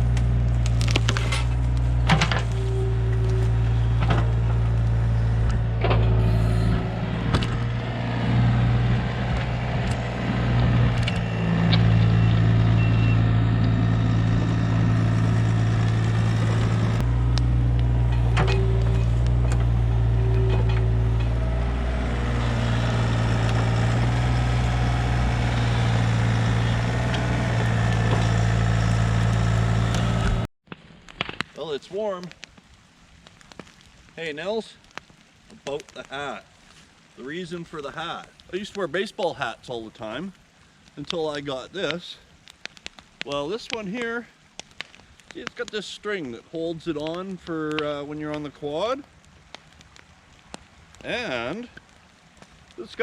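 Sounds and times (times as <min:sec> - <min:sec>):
excavator diesel engine running: 0:00.0 - 0:30.5.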